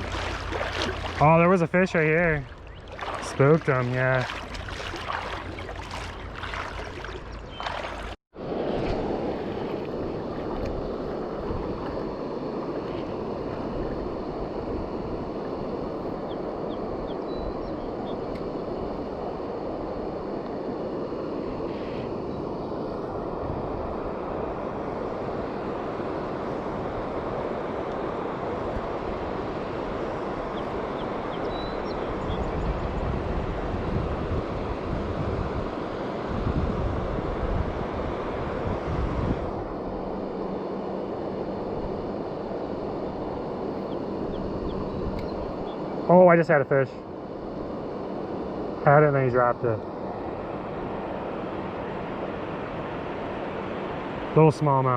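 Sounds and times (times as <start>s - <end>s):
river water rushing: 0.0s - 8.2s
wind on microphone: 0.0s - 20.7s, 21.4s - 40.6s.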